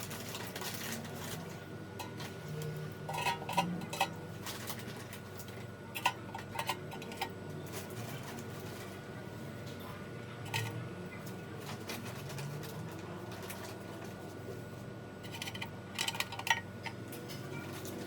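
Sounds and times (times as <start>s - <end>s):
steady low hum: 14.3s - 18.0s.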